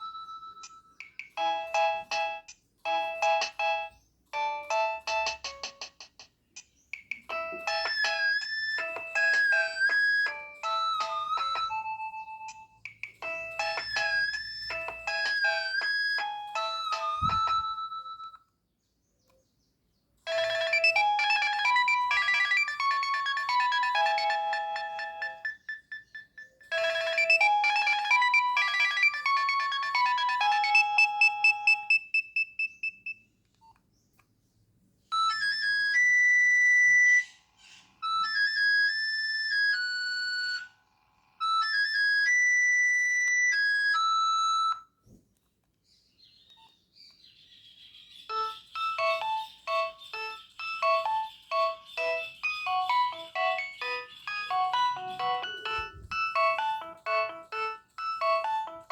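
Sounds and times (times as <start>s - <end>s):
beeping ringtone melody: 0.0s - 5.9s, 7.1s - 18.5s, 20.3s - 33.2s, 35.1s - 37.4s, 38.0s - 45.0s, 48.3s - 58.9s
fast rhythmic ringtone tune: 0.0s - 6.1s, 7.0s - 18.4s, 20.3s - 33.0s, 35.1s - 37.3s, 38.0s - 44.9s, 48.2s - 58.9s
held electronic beeps: 48.3s - 58.8s.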